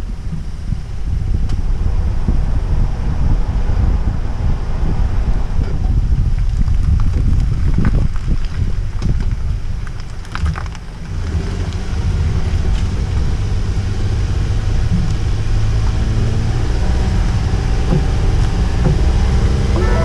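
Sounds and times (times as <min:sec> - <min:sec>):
engine and road rumble: 0:00.0 - 0:20.0.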